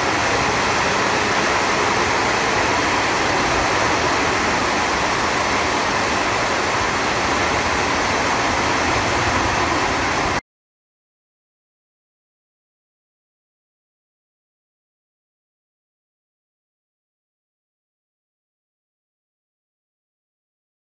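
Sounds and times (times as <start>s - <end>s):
heavy rain pouring: 0.0s - 10.4s.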